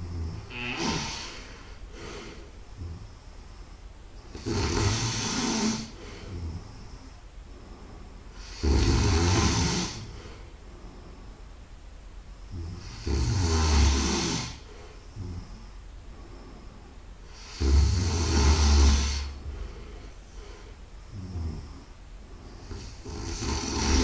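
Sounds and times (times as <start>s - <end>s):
person snoring loudly: 0.0s - 3.0s, 4.3s - 6.7s, 8.4s - 10.2s, 12.5s - 15.6s, 17.4s - 19.4s, 22.7s - 24.0s
quiet breaths: 0.0s - 24.0s.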